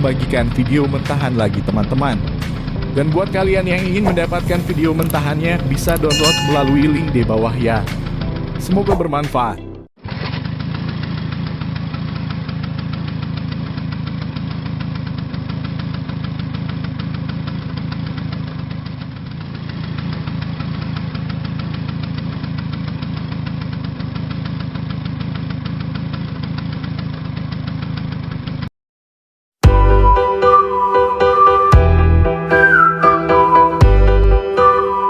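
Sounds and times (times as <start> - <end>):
motorcycle engine running: 0.0 - 8.8, 10.0 - 28.7.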